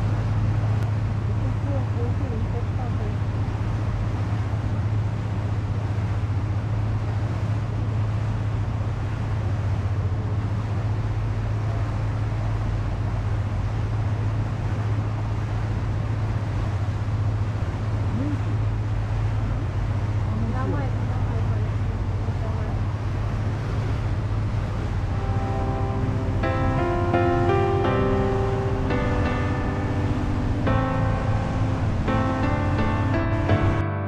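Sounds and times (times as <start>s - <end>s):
boat engine droning: 10.4s - 34.0s.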